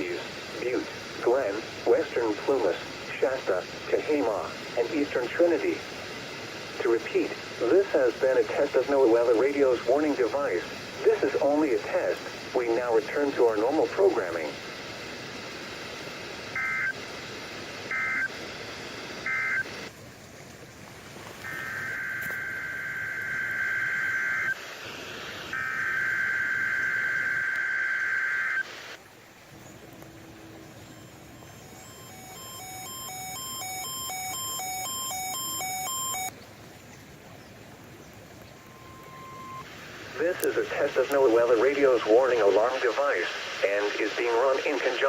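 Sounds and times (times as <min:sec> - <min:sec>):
radio hiss: 0:00.0 - 0:19.9, 0:21.1 - 0:36.3, 0:38.6 - 0:45.0
warbling digital data tones: 0:16.5 - 0:17.0, 0:19.2 - 0:19.8, 0:21.4 - 0:24.6, 0:30.5 - 0:36.3, 0:38.6 - 0:39.7
two-tone alert beep: 0:31.4 - 0:36.3.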